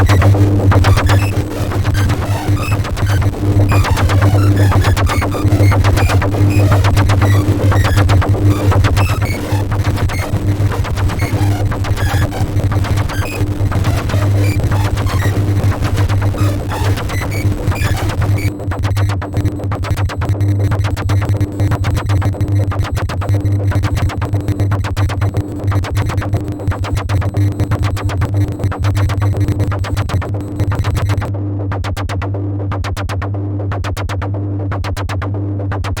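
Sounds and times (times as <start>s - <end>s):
pulsing mid tone: 0.0s - 22.4s
low bass drone: 0.0s - 22.5s.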